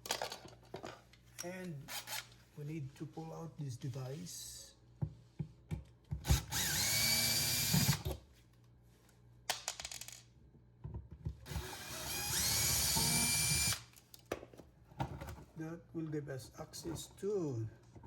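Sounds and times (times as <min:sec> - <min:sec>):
power drill whining: 0:06.3 - 0:08.1, 0:11.5 - 0:13.8.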